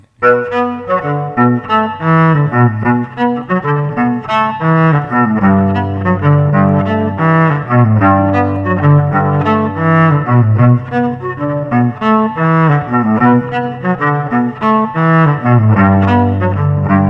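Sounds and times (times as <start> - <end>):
string instrument melody: 0.0 - 17.0
low held note: 5.5 - 13.9.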